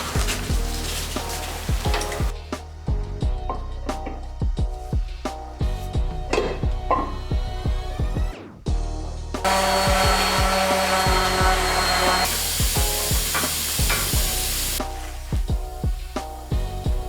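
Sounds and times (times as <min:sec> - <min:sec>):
background music with beat: 0:00.0 - 0:17.0
power tool running: 0:09.4 - 0:14.8.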